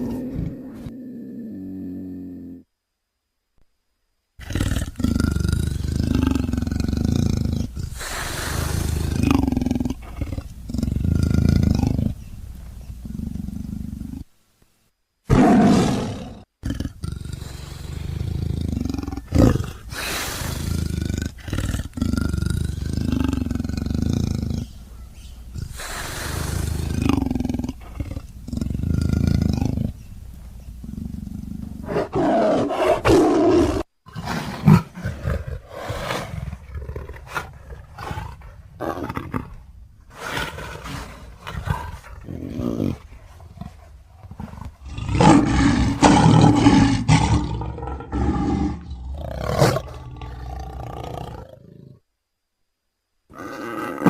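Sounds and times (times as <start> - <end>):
big cat roaring and growling: 0.0 - 2.6, 15.3 - 24.7, 30.9 - 52.0, 53.3 - 54.0.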